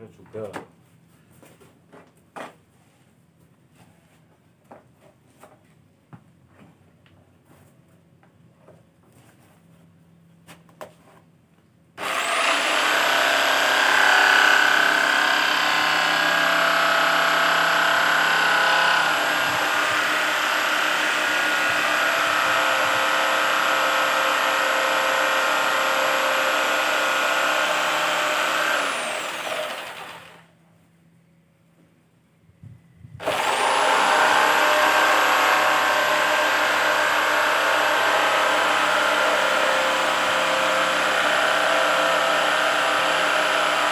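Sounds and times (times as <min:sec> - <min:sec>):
jigsaw motor whining: 0:12.0 - 0:30.5, 0:33.2 - 0:43.9.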